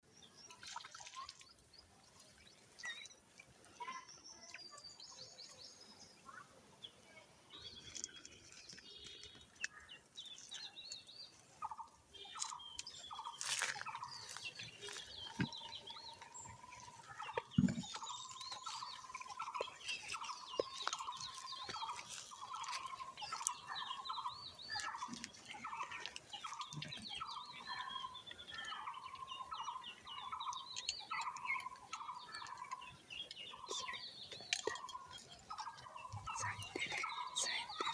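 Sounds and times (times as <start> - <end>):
birds chirping: 0.0 - 37.9
repeated bird call: 12.2 - 32.8.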